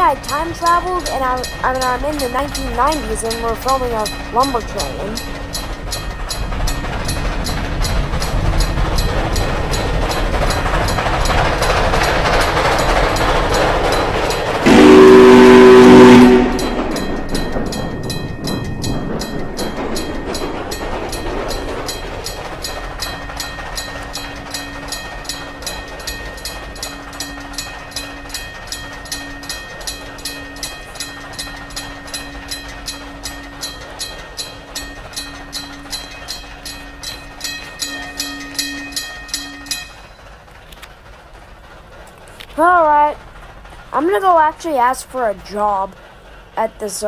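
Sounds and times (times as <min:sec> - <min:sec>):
freight train rumbling past: 0:00.0 - 0:47.0
wheels clacking over rail joints: 0:00.0 - 0:47.0
train horn blast: 0:14.6 - 0:16.8.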